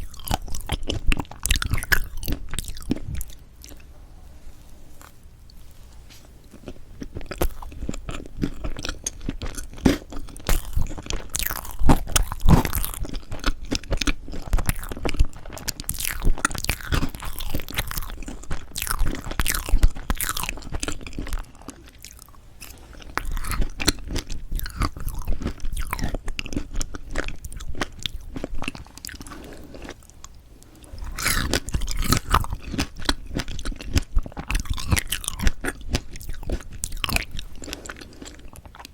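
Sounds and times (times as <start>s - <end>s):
close chewing and biting of cake: 0.0s - 3.9s, 4.8s - 38.9s
crunchy crackly mouth sounds: 0.0s - 3.9s, 6.4s - 38.9s.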